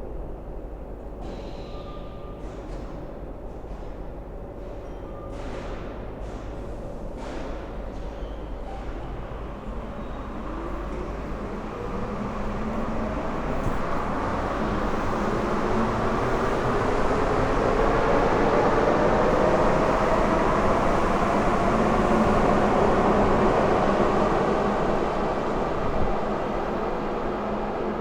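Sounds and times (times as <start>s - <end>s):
bus engine running: 9.6s - 28.0s.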